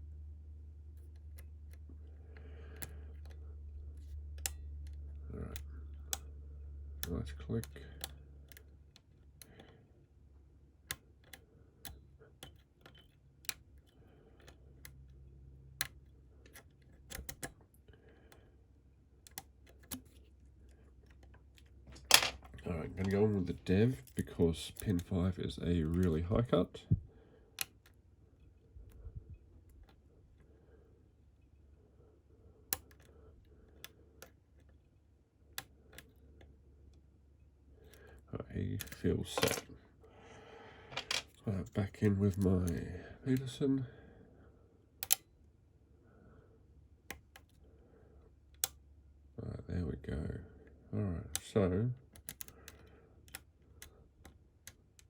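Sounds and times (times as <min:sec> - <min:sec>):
lock pick clicks and taps: 0:10.8 - 0:17.8, 0:19.2 - 0:22.6, 0:45.0 - 0:45.3, 0:48.5 - 0:48.8, 0:52.1 - 0:55.0
lock pick metallic clicks: 0:45.0 - 0:45.2.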